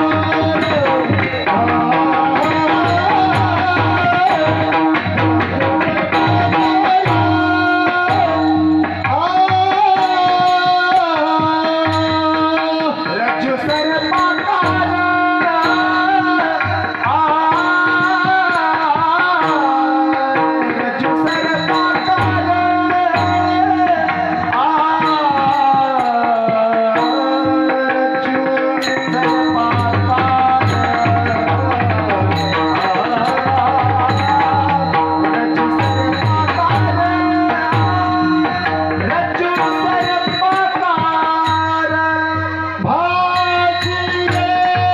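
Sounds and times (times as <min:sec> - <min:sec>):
man singing devotional song: 0:00.0 - 0:44.9.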